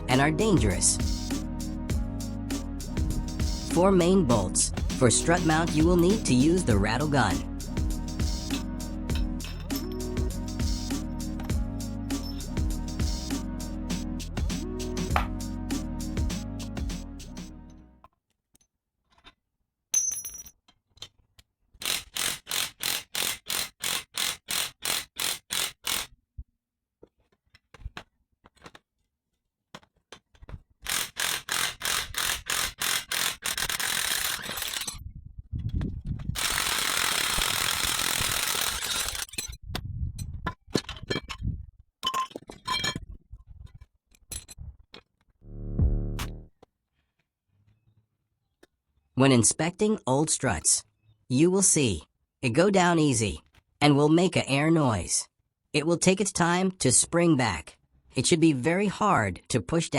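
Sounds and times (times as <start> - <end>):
impact wrench hammering: 15.2 - 15.4
clicking hand tool: 21.8 - 26.1, 29.8 - 34.9, 36.4 - 39.3.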